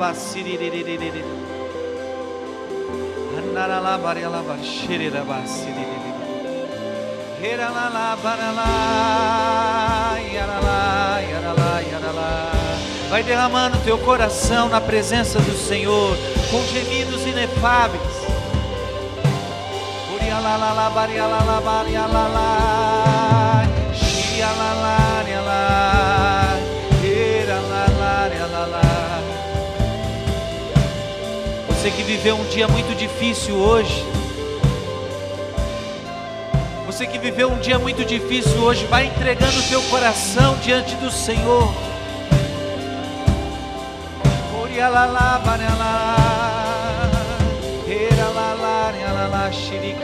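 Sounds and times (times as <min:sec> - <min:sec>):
slow worship band music: 0:00.0 - 0:50.0
vibrato vocal: 0:00.0 - 0:50.0
drum hits: 0:09.9 - 0:48.5.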